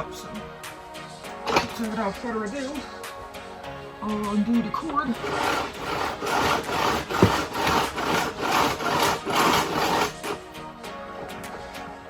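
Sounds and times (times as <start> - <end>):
power cord rasping out of reel: 1.3 - 1.9, 5.2 - 10.5.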